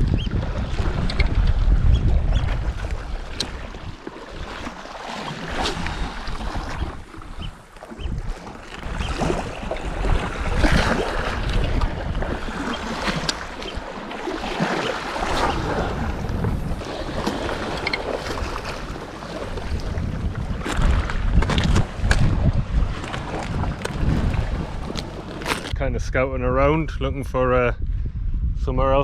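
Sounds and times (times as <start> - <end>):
wind buffeting microphone: 0.0 - 29.0
waves washing against rocks: 2.6 - 25.7.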